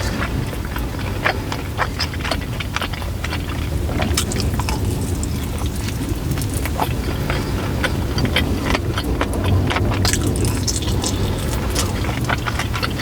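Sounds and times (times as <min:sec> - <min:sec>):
chewing food: 0:00.0 - 0:13.0
steady low rumble: 0:00.0 - 0:13.0
wet mouth smacks: 0:04.0 - 0:06.9, 0:10.0 - 0:13.0.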